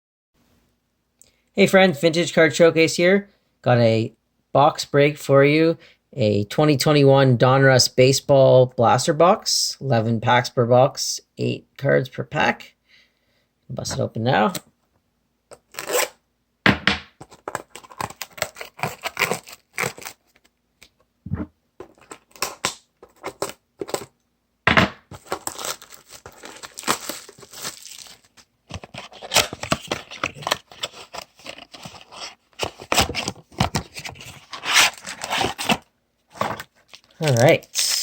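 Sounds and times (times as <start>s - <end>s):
wrapped packs crinkling: 17.3s - 20.5s, 25.1s - 35.8s, 36.4s - 38.0s
cardboard ripping: 17.4s - 20.2s, 25.1s - 35.8s.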